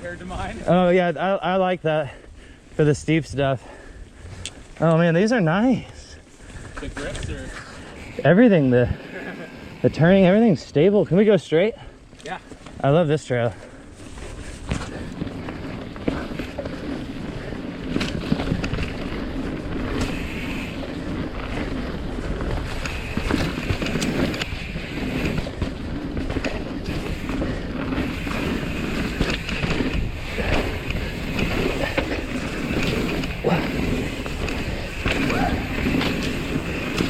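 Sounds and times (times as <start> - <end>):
bike tyres rolling on dirt: 0.0 - 37.0
bike clattering over bumps: 13.9 - 37.0.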